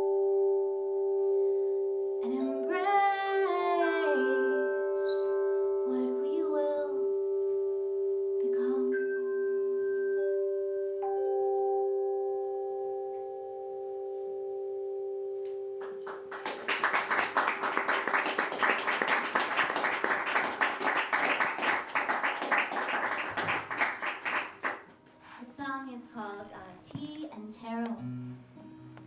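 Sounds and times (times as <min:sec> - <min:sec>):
audience applause: 0:15.8 - 0:24.8.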